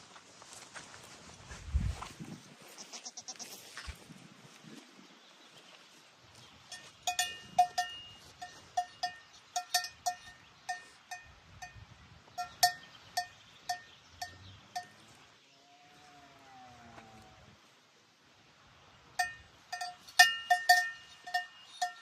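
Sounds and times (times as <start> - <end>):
livestock bells clanking: 6.7 - 11.8, 12.4 - 15.0, 19.2 - 22.0.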